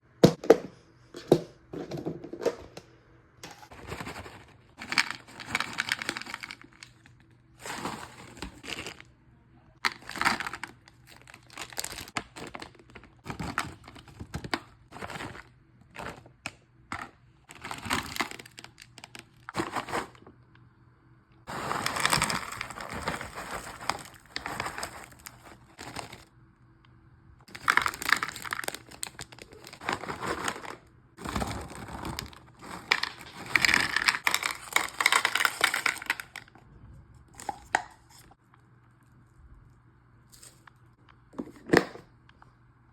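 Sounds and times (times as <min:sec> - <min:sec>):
snacks clattering into plastic: 0:03.7 - 0:09.0, 0:09.8 - 0:20.2, 0:21.5 - 0:26.3, 0:27.5 - 0:36.5
snack packaging crinkling: 0:03.7 - 0:09.1, 0:09.8 - 0:20.2, 0:21.5 - 0:26.3, 0:27.5 - 0:36.5.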